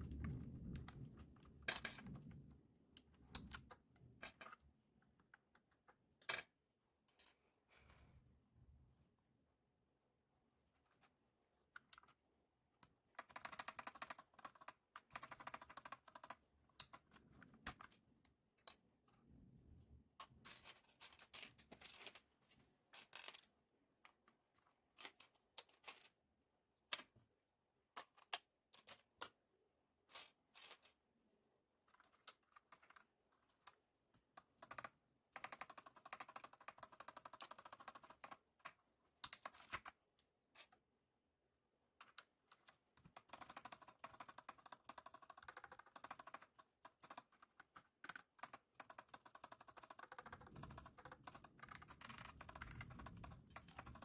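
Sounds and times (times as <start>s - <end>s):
typing on mechanical keyboard: 12.9s - 18.0s, 31.9s - 40.0s, 42.1s - 54.0s.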